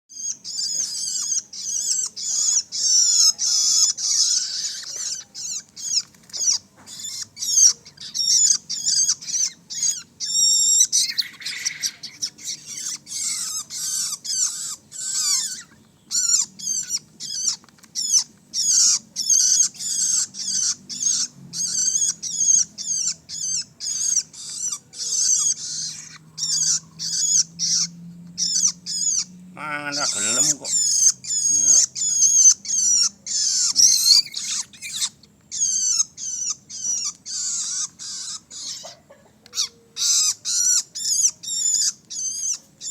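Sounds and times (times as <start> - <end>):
young shrike calling: 0.1 - 42.9.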